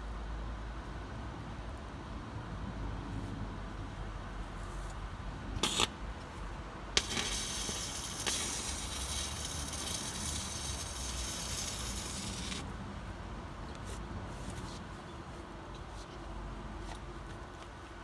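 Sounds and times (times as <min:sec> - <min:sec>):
welding arc crackling and hissing: 0:05.6 - 0:05.9, 0:07.0 - 0:12.7.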